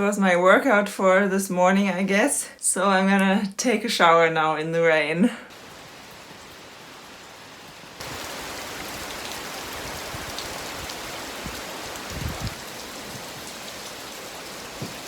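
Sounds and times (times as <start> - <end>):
heavy rain falling: 5.5 - 15.0.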